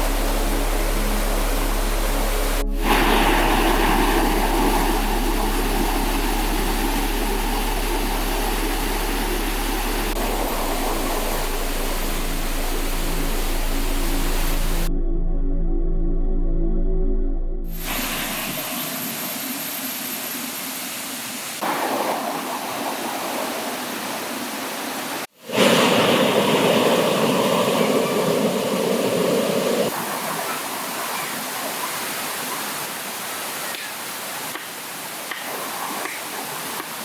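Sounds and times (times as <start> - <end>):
river water rushing over rocks: 2.2 - 14.8.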